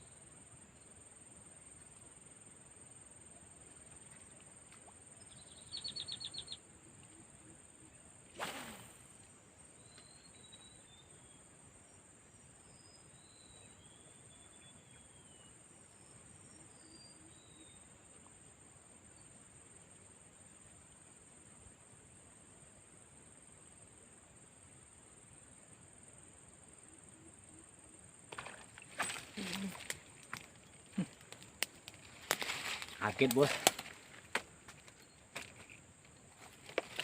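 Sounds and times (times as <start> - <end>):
insects droning: 0.0 - 37.0
faint bird chirps: 5.1 - 8.8, 9.7 - 12.0, 12.6 - 18.2, 28.4 - 31.4.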